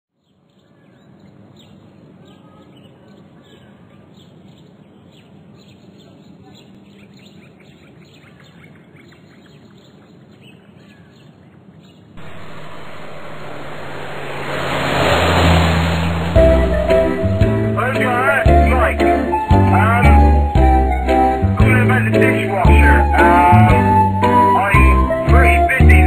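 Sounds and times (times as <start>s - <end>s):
steady background noise: 12.2s - 18.0s.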